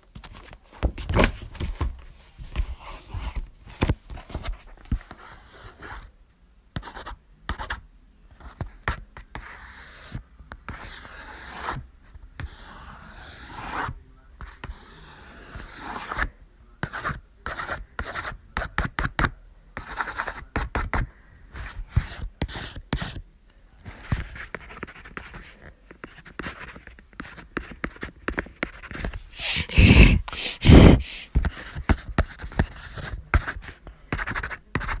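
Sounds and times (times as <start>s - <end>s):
pen scratching on paper: 4.2s - 6.1s, 6.8s - 7.8s, 8.5s - 11.8s, 12.4s - 21.0s, 21.6s - 23.2s, 23.9s - 35.0s.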